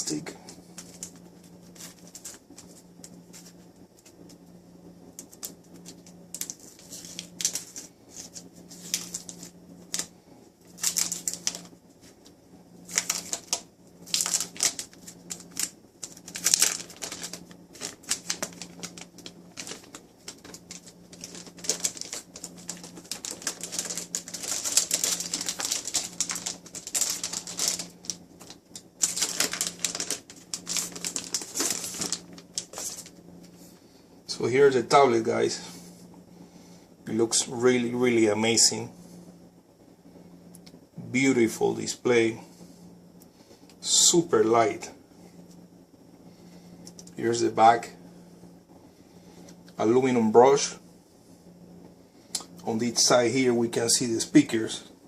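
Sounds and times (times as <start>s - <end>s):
plastic wrapping crinkling: 0.0s - 4.4s, 5.2s - 33.6s
faint low hum: 0.0s - 55.0s.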